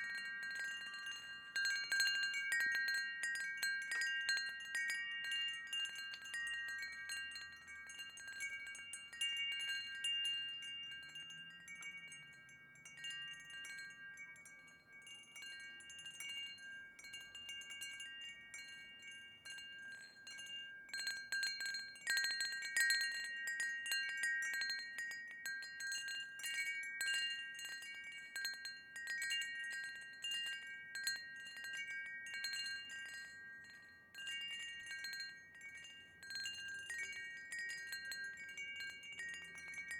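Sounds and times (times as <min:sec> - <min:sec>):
wind chime ringing: 0:00.0 - 0:39.9.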